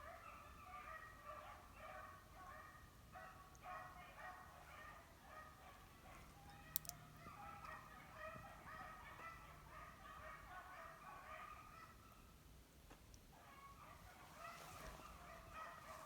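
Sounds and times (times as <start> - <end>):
hunting dogs baying: 0.0 - 12.3, 13.4 - 16.0
sharp click: 6.7 - 7.0.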